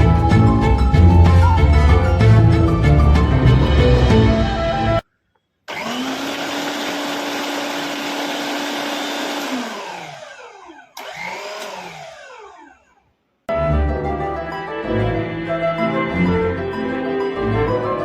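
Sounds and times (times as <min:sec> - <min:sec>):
background music: 0:00.0 - 0:05.0, 0:13.5 - 0:18.0
mixer grinder motor running: 0:05.7 - 0:12.9
motor winding down: 0:05.7 - 0:13.0.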